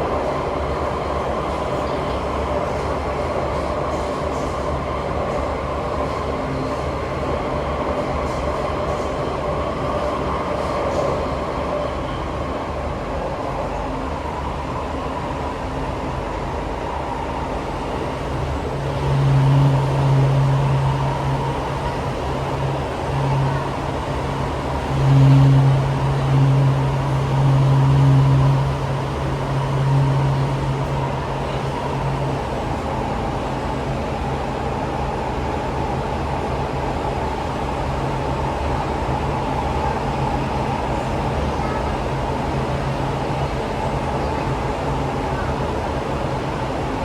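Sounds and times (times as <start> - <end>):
train ride rumble: 0.0 - 47.0.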